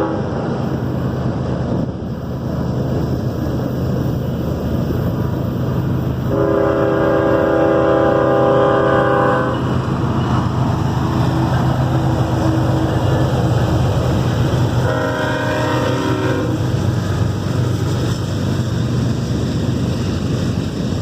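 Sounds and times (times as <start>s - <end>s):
locomotive air horn blast: 0.0s - 0.4s, 6.3s - 9.7s, 14.6s - 16.8s
train passing with heavy rumble: 0.0s - 21.0s.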